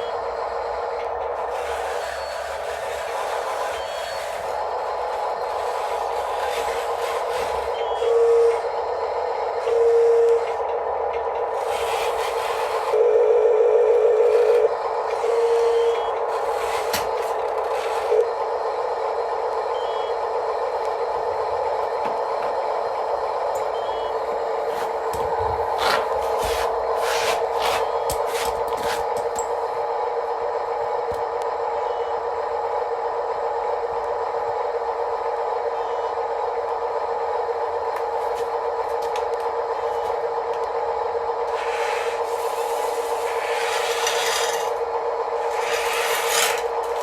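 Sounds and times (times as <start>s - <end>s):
reversing beeper: 0.0s - 18.2s, 19.4s - 20.4s, 22.8s - 28.2s, 31.6s - 32.4s, 35.6s - 36.4s
electric motors whining: 0.0s - 47.0s.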